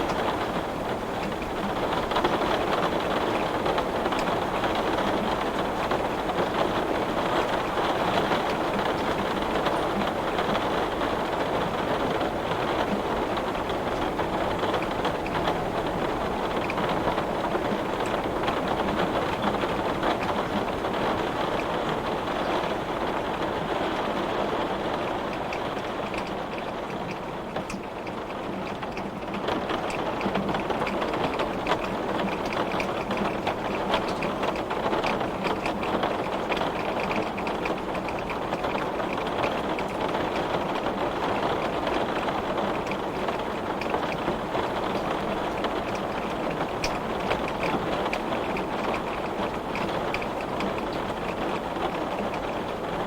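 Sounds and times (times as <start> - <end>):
heavy rain on a glass window: 0.0 - 53.0.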